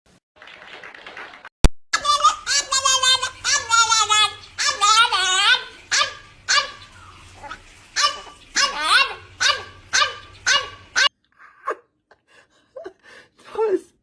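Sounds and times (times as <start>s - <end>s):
dog barking: 5.8s - 7.2s, 8.0s - 11.1s.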